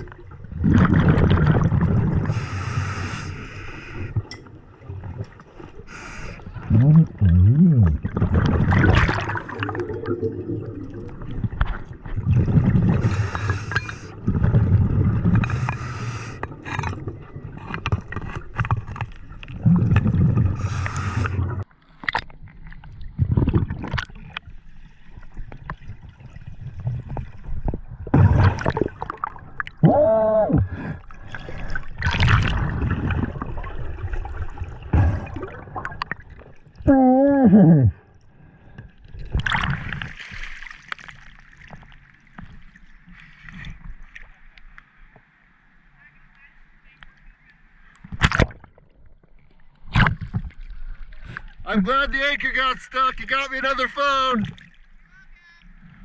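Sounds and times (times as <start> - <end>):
exhaled bubbles gurgling: 0.0 - 21.7, 22.8 - 24.5, 25.1 - 40.3
scuba regulator breaths: 2.2 - 4.2, 5.8 - 6.6, 12.9 - 14.3, 15.3 - 18.3, 20.5 - 21.6.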